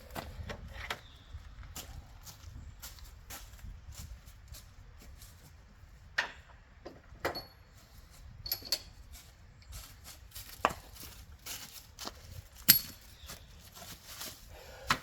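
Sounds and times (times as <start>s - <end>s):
hand tools knocking and clinking: 6.9s - 7.7s, 8.4s - 9.0s, 12.6s - 13.1s.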